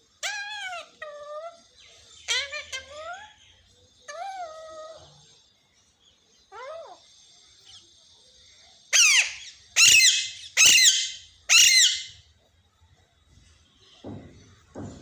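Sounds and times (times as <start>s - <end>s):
parrot squawking: 0.2s - 3.4s, 4.1s - 5.0s, 8.9s - 12.2s.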